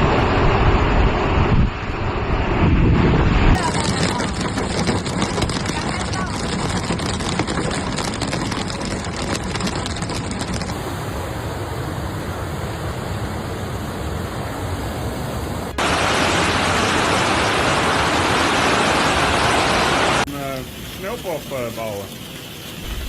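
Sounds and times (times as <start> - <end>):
heavy rainstorm: 0.0 - 23.0
floodwater rushing: 3.6 - 23.0.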